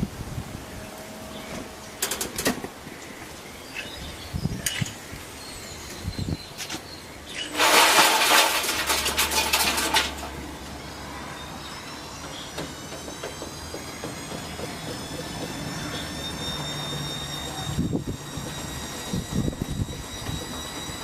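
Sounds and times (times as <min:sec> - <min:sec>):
washing machine rattling: 0:07.5 - 0:10.4
motor whine rising in pitch: 0:10.4 - 0:21.0.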